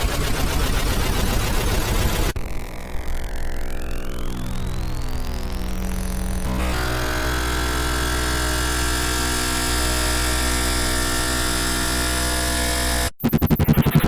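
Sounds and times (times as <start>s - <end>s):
dense droning noise: 1.5s - 11.8s.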